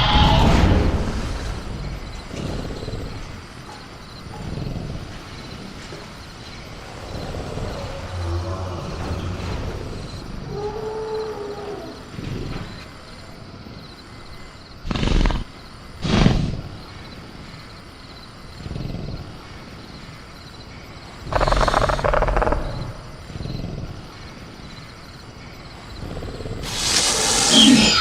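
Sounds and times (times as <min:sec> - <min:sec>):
crickets chirping: 0:00.0 - 0:28.0
creature growling: 0:06.8 - 0:12.8, 0:21.2 - 0:24.0.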